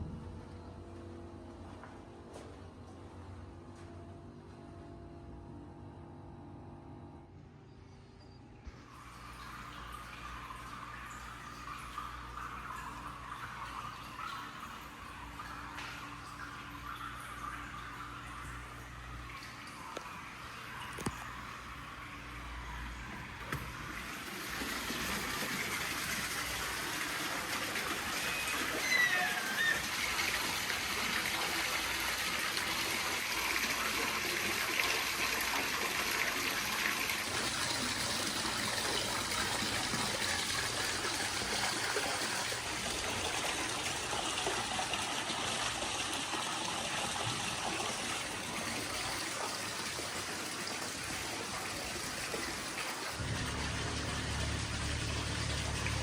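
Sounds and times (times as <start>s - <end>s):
running water: 8.8s - 56.0s
high falling squeak: 28.2s - 30.3s.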